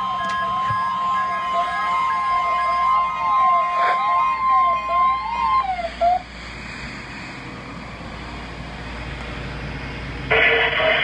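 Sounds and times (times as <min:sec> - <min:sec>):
wavering siren tone: 0:00.0 - 0:06.4
radio hiss: 0:10.2 - 0:11.0.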